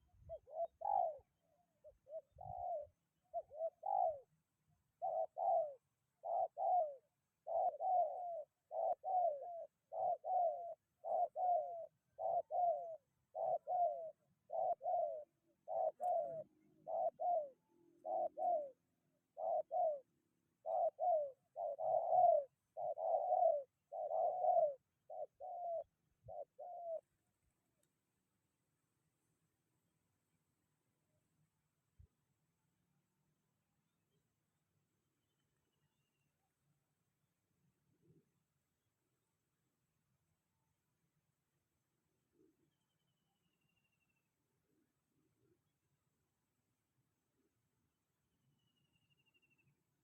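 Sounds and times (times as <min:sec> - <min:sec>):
dove cooing: 0:00.0 - 0:27.1.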